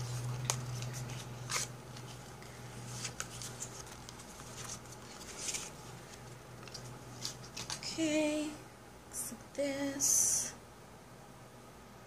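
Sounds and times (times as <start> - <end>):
packaging rustling and clicking: 0.0 - 7.9.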